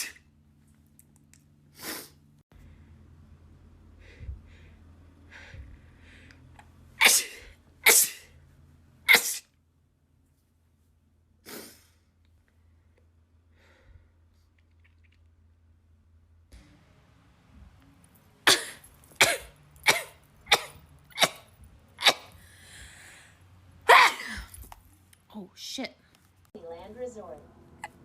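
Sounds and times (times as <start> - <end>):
woman sneezing: 7.0 - 8.3, 9.1 - 9.5, 23.9 - 24.7.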